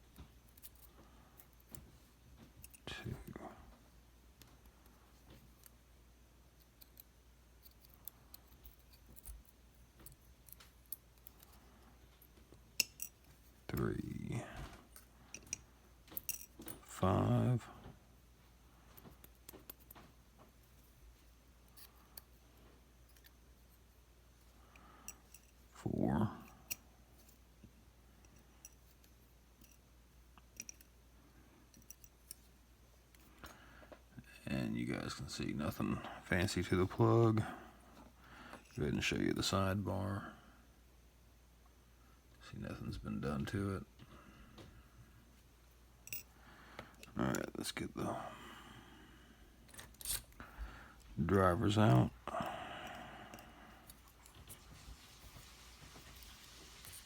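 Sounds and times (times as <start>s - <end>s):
small metal lock parts clicking: 12.8s - 13.2s, 30.4s - 30.9s, 49.7s - 50.4s.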